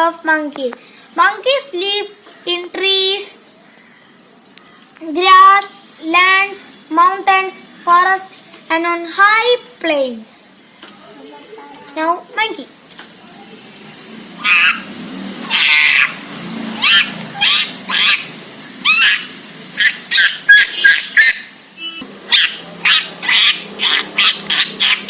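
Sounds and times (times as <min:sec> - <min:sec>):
person imitating monkey calls: 0:14.4 - 0:16.2, 0:16.8 - 0:21.6, 0:22.3 - 0:25.0.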